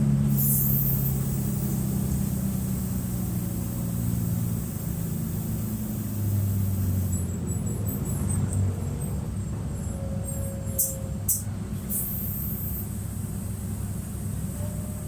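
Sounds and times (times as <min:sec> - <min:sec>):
bus diesel engine running: 0:00.0 - 0:15.0
short high hiss: 0:00.3 - 0:07.1.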